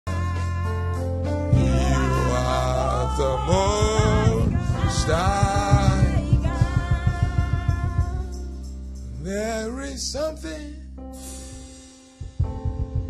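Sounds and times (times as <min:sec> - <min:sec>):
person singing gospel: 0:00.1 - 0:10.8
fast steady beat: 0:01.5 - 0:09.3, 0:12.2 - 0:13.0
sustained low instrumental notes: 0:01.5 - 0:09.8.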